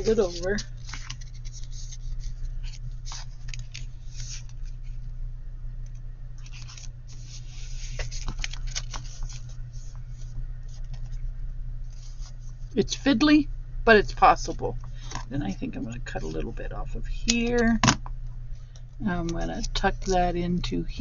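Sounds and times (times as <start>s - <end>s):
paper rustling and crinkling: 0.0s - 5.0s, 6.4s - 11.2s
low hum: 0.0s - 21.0s.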